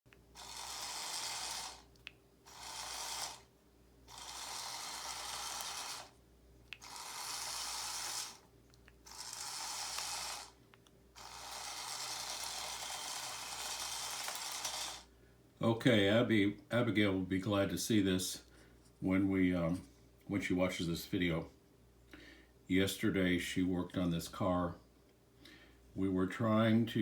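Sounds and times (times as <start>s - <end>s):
small motors whirring: 0.3s - 3.5s, 4.1s - 6.2s, 6.8s - 10.6s, 11.2s - 15.1s
small clicks: 6.7s - 15.0s.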